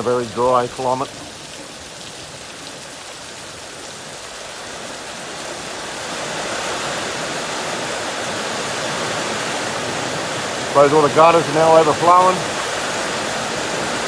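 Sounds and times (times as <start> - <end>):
heavy rain pouring: 0.0 - 14.0.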